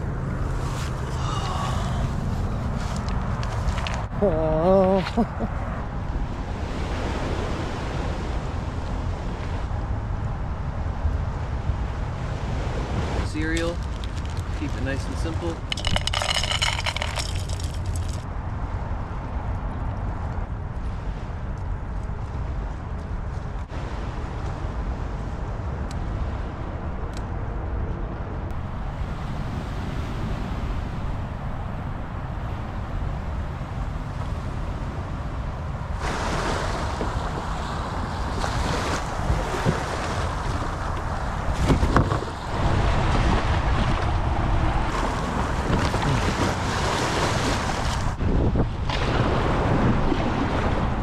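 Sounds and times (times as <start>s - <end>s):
wind buffeting microphone: 0.0s - 51.0s
sea water washing and splashing: 35.9s - 44.1s, 44.8s - 48.2s.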